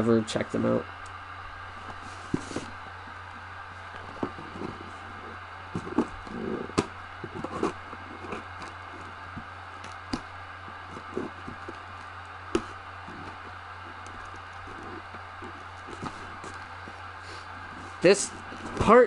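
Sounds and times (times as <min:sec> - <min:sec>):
microphone hiss and hum: 0:00.0 - 0:19.0
cardboard box knocks and scrapes: 0:01.9 - 0:02.8, 0:05.7 - 0:09.5, 0:12.5 - 0:16.7
packing tape being cut: 0:03.9 - 0:18.8.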